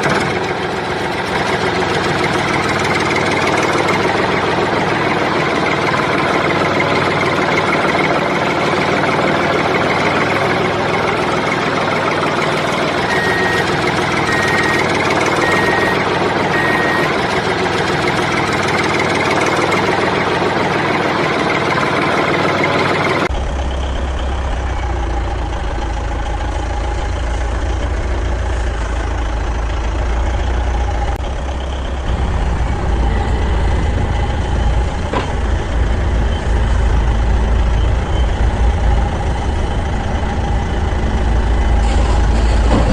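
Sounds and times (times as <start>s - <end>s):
heavy vehicle engine running: 0.0s - 42.9s
short reversing beeps: 13.1s - 17.1s.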